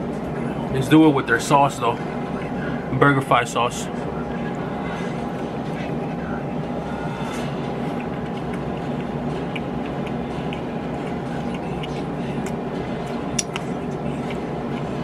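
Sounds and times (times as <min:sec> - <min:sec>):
droning hum: 0:00.0 - 0:15.0
person chewing food: 0:06.9 - 0:15.0
wet mouth clicks: 0:07.9 - 0:13.6.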